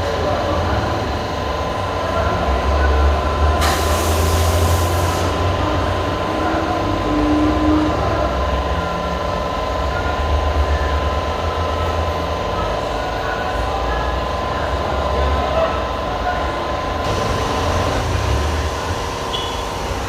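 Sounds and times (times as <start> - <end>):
burst of hiss: 3.6 - 5.3
steady low rumble: 17.0 - 20.0
constant high tone: 18.8 - 19.9.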